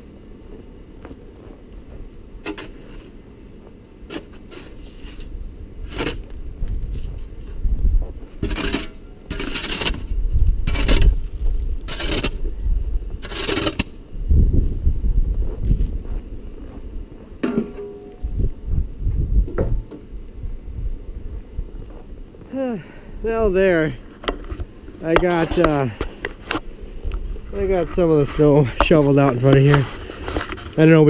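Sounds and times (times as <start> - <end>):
snow shovel scraping snow: 2.4 - 3.2, 4.1 - 6.3, 7.1 - 12.4, 13.2 - 14.0
wind rumble on microphone: 5.2 - 17.4, 18.1 - 22.3.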